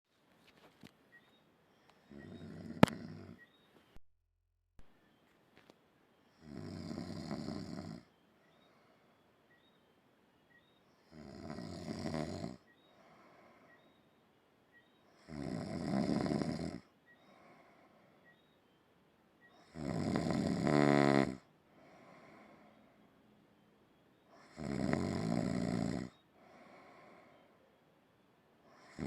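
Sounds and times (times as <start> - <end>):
soft snoring: 1.8 - 3.5, 6.3 - 9.2, 10.9 - 14.0, 15.0 - 18.4, 19.4 - 23.1, 24.3 - 27.7, 28.6 - 29.0.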